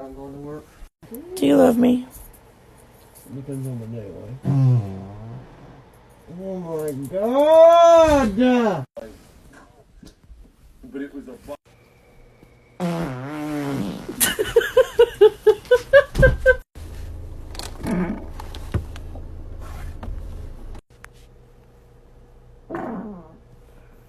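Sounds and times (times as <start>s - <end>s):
fart with wavering pitch: 4.4s - 5.8s, 12.8s - 14.3s, 22.7s - 23.4s.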